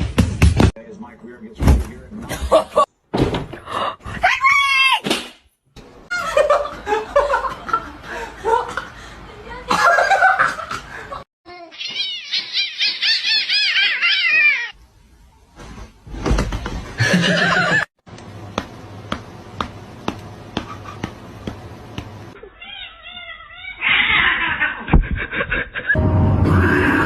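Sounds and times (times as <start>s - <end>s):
cats meowing and yowling: 11.6s - 14.8s, 22.5s - 24.9s.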